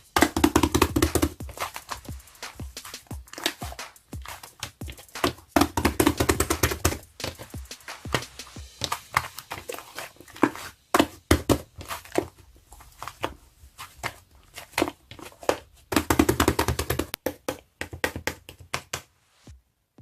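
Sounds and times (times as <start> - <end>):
sharp taps and clicks: 0.2 - 9.3, 15.9 - 19.1.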